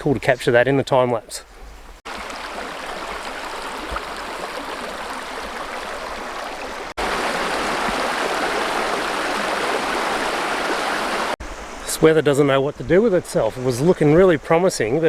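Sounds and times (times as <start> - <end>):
river rushing over rocks: 2.2 - 11.4.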